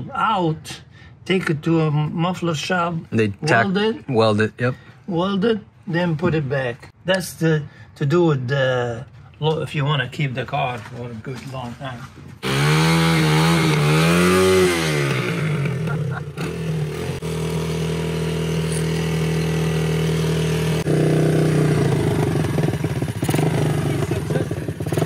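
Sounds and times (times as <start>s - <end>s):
engine revving and idling: 12.4s - 25.0s.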